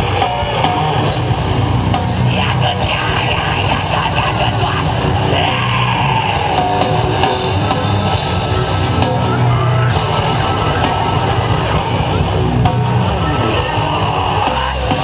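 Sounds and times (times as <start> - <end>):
heavy metal music with guitar: 0.0 - 15.0.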